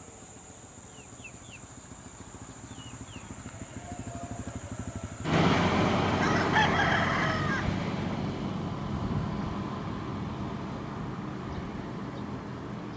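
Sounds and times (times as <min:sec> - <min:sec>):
rooster crowing: 0:03.6 - 0:05.3, 0:05.9 - 0:08.0.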